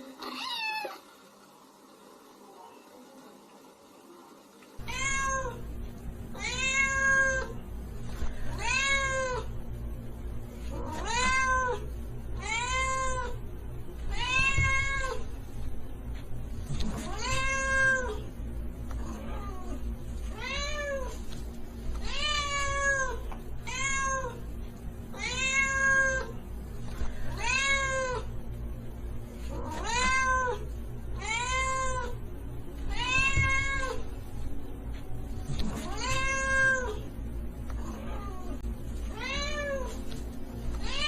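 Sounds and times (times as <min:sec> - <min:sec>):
steady low hum: 0:00.0 - 0:41.0
cat meowing: 0:00.2 - 0:01.0, 0:06.4 - 0:07.5.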